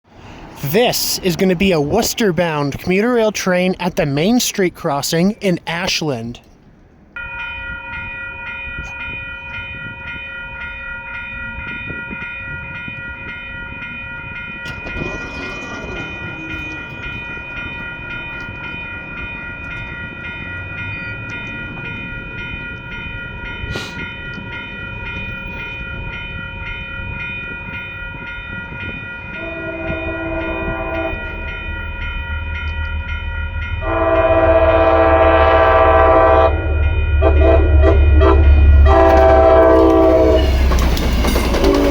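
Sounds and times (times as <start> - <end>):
train rumble: 0.1 - 41.9
crossing bell ringing: 0.3 - 6.5, 7.2 - 41.9
locomotive horn blasts: 29.4 - 31.5, 33.8 - 40.8.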